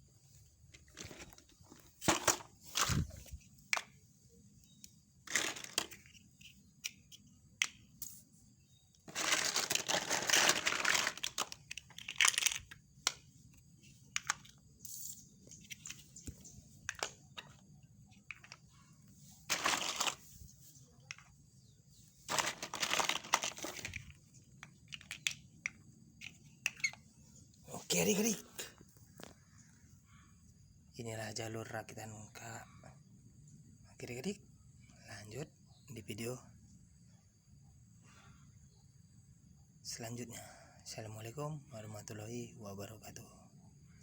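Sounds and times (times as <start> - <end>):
plastic track pieces clicking: 5.3 - 8.1, 9.1 - 13.2, 14.1 - 14.6, 22.3 - 27.0
rustling crinkling: 9.0 - 12.6, 19.4 - 20.5, 22.3 - 24.2.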